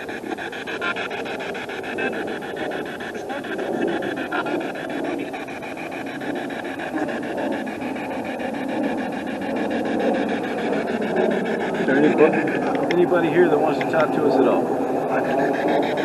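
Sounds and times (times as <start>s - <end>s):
pulsing radio static: 0.0s - 16.0s.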